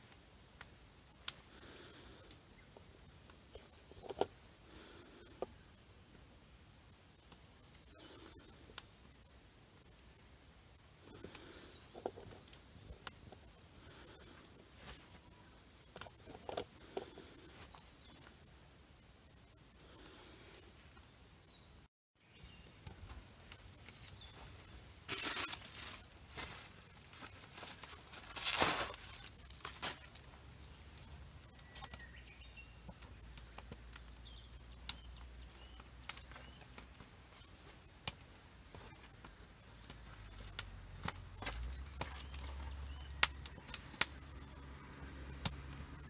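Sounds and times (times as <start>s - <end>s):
rustling and crinkling: 22.8s - 32.1s.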